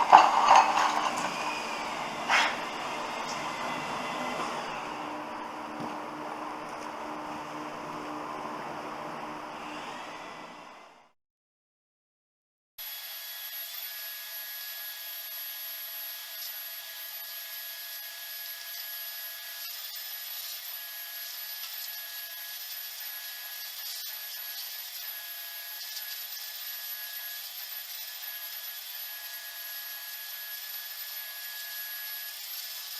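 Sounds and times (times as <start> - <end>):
vacuum cleaner running: 0.0 - 11.1.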